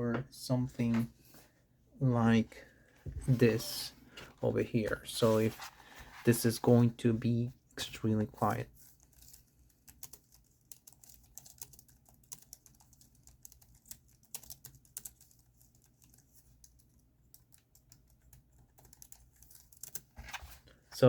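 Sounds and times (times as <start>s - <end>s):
soft keyboard typing: 8.9s - 20.2s.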